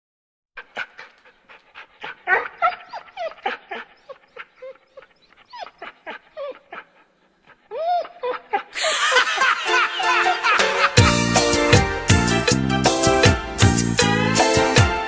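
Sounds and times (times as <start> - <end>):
dog whimpering and yipping: 0.7 - 8.7.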